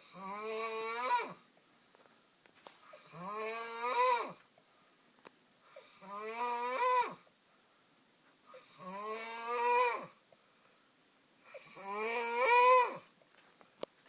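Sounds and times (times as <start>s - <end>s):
man snoring loudly: 0.0s - 1.4s, 3.0s - 4.4s, 5.8s - 7.2s, 8.6s - 10.2s, 11.5s - 13.1s.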